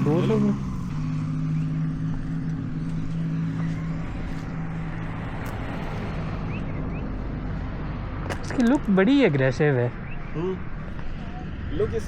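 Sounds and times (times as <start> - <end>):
engine idling: 0.0 - 5.2.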